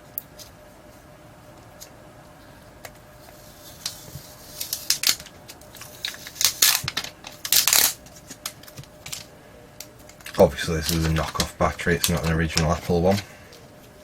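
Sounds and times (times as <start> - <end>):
thin plastic crinkling: 3.2 - 14.0.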